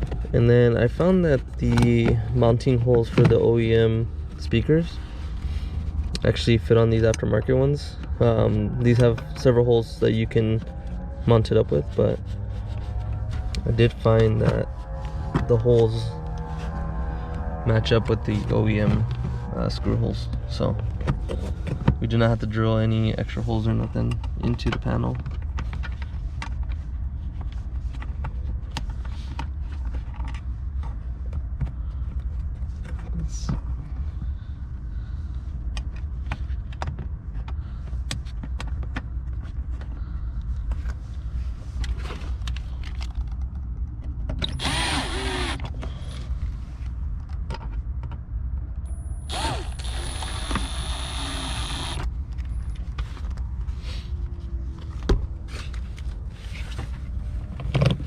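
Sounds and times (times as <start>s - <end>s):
steady low hum: 25.2s - 58.0s
cordless drill motor: 44.4s - 45.7s, 49.2s - 52.0s.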